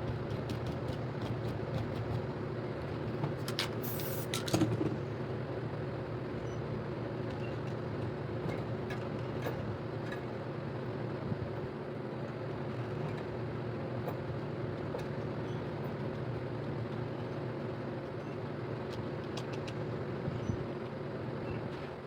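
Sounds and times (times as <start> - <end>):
spray paint can hiss: 3.8 - 4.3.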